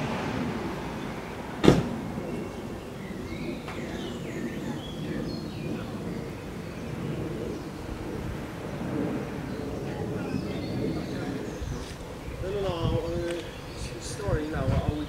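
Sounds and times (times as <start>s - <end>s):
birds chirping: 0.0s - 15.0s
traffic rumble: 0.0s - 15.0s
sharp knock: 1.6s - 2.0s.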